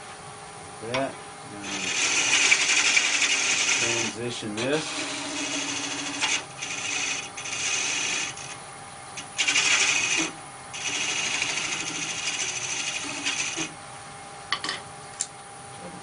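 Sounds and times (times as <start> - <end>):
lathe hum: 1.5 - 8.6, 9.2 - 13.8
lathe tool scraping wood: 1.6 - 8.6, 9.2 - 13.8.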